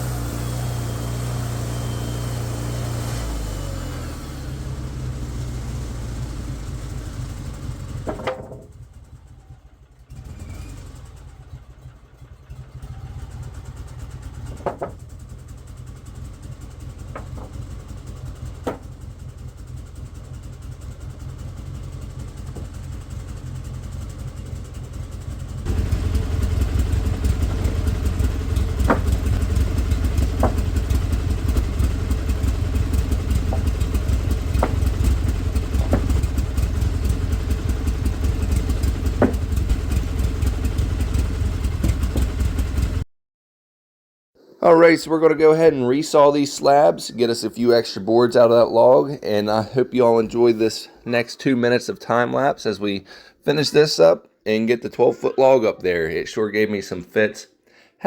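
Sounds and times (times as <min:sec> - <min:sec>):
sawmill gas engine running: 0:00.0 - 0:43.0, 0:44.6 - 0:51.2, 0:53.0 - 0:53.3
sharp clunks: 0:07.9 - 0:08.8, 0:14.3 - 0:15.2, 0:16.9 - 0:19.2, 0:22.3 - 0:23.4, 0:25.6 - 0:40.3, 0:41.6 - 0:42.4.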